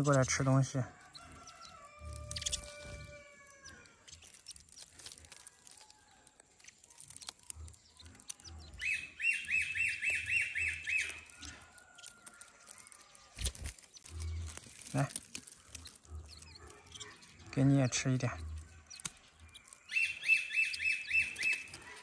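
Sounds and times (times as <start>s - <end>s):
young birds chirping rapidly: 0.0s - 22.0s
young birds whistling: 1.0s - 6.0s, 6.6s - 22.0s.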